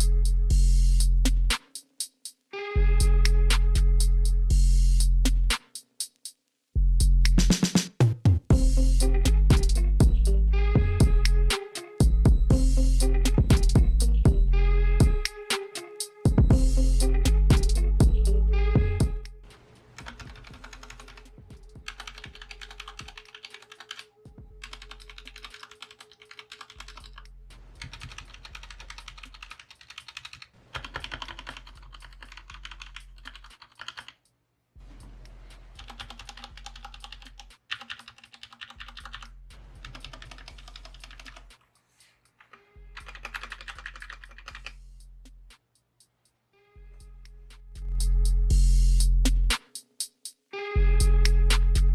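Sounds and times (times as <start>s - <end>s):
background music: 8.5s - 26.5s
mechanical keyboard keys clacking: 24.7s - 27.0s, 27.9s - 34.2s, 35.8s - 39.2s, 39.8s - 41.6s, 43.0s - 44.7s.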